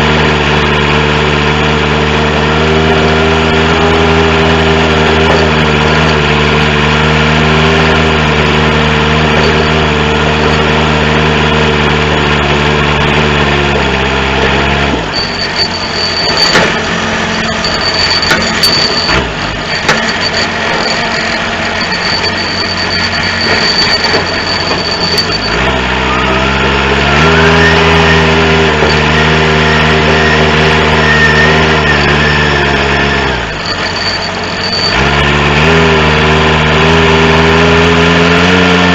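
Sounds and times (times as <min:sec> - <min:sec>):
diesel engine running: 0:00.0 - 0:38.9
thin high whine: 0:04.8 - 0:06.3, 0:09.3 - 0:10.7, 0:14.9 - 0:36.1
metal clanks: 0:05.1 - 0:06.2, 0:09.3 - 0:10.7, 0:14.4 - 0:26.2, 0:33.6 - 0:35.1.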